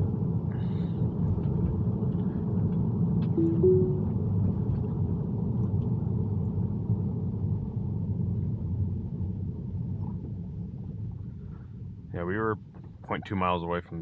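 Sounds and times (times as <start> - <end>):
road and tyre rumble: 0.0 - 3.4, 4.2 - 13.2
short electronic tone: 3.4 - 4.1.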